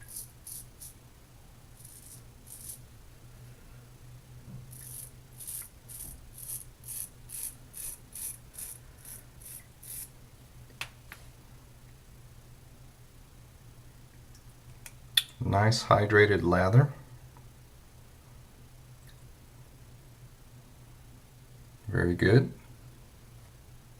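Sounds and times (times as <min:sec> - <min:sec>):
razor scraping stubble: 0:00.0 - 0:01.0, 0:01.8 - 0:02.8, 0:04.7 - 0:10.1.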